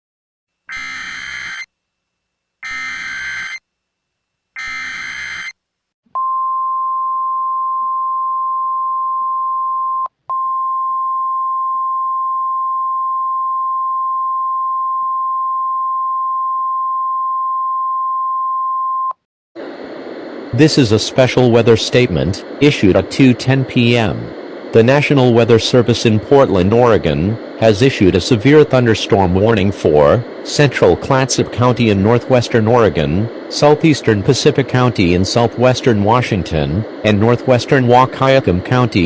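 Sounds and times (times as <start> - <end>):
digital data bursts: 0.7 - 1.7, 2.6 - 3.6, 4.6 - 5.6
steady warning alarm tone: 0.7 - 1.7, 2.6 - 3.6, 4.6 - 5.6.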